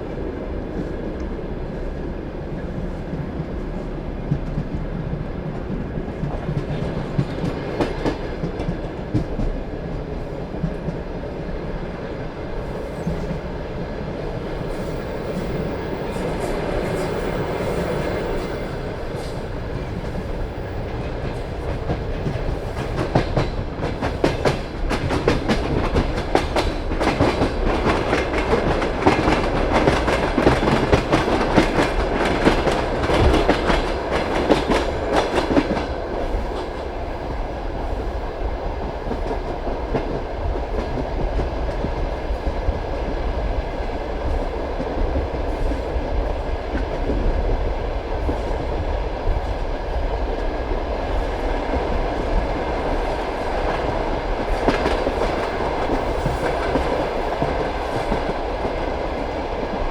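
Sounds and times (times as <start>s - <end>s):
train rumble: 0.0s - 59.9s
train wheels clacking on rail joints: 14.4s - 37.0s, 44.2s - 59.9s.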